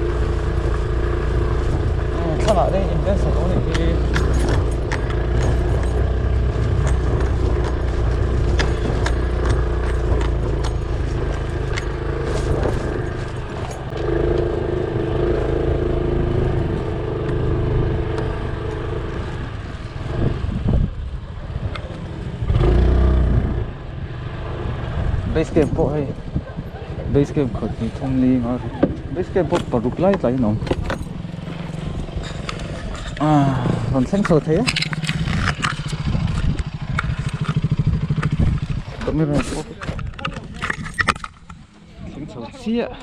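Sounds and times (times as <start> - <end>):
rattles and scrapes: 0.0 - 14.7, 27.2 - 42.6
vehicle engine running: 0.0 - 21.5, 22.1 - 41.8.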